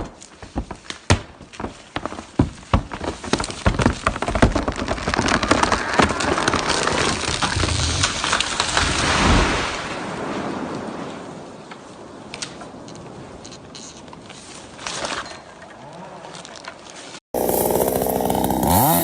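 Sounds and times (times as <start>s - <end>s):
wood cracking and snapping: 0.0s - 9.2s
branches crashing: 0.0s - 10.4s, 16.5s - 19.0s.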